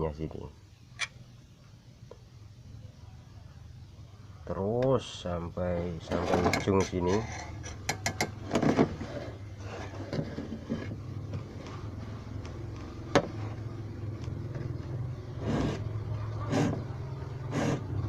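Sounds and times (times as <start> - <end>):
steady low hum: 0.0 - 18.0
metal file rasping on saw teeth: 15.4 - 17.9.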